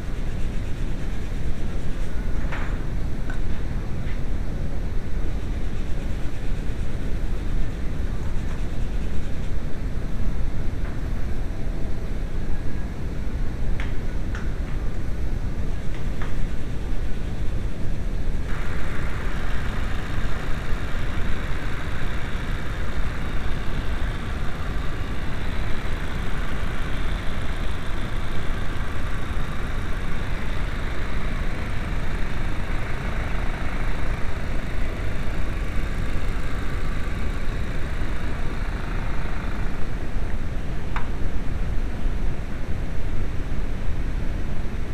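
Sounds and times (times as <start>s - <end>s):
turbo hiss: 18.5s - 40.0s
car engine running: 18.5s - 40.1s.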